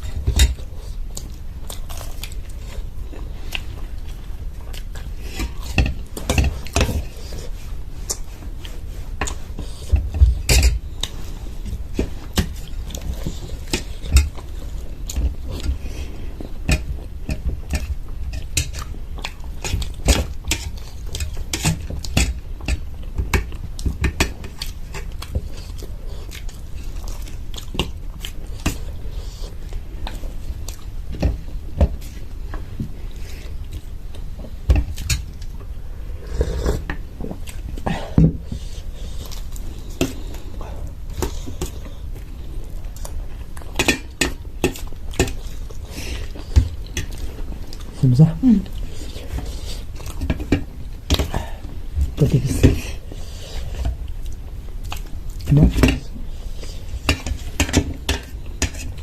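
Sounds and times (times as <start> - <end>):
biting and chewing food: 0.0 - 35.8.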